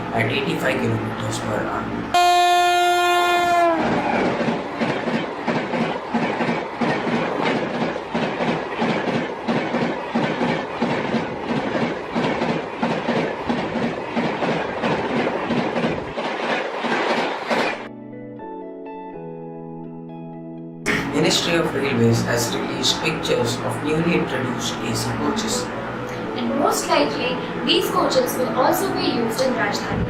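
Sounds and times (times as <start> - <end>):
train horn dropping in pitch: 2.1 - 4.2
train wheels clattering over rail joints: 3.8 - 17.9
music: 17.9 - 30.0.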